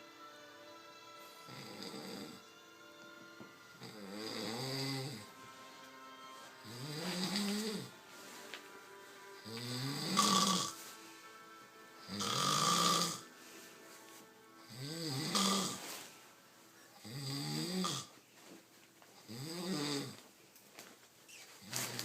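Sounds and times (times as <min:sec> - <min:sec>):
man snoring: 0:01.5 - 0:02.4, 0:03.8 - 0:05.3, 0:06.6 - 0:08.0, 0:09.4 - 0:10.8, 0:12.0 - 0:13.3, 0:14.7 - 0:15.8, 0:17.0 - 0:18.1, 0:19.2 - 0:20.2.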